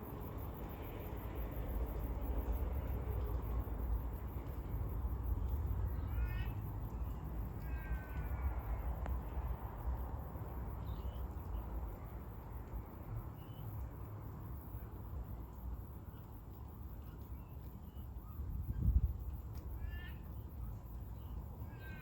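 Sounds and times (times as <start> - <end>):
crow calling: 7.6 - 8.8, 21.7 - 22.0.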